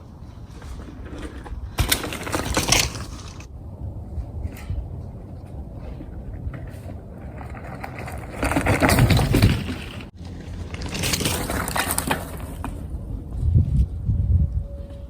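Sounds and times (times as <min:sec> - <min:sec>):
bike tyres on dirt trail: 0:00.0 - 0:15.0.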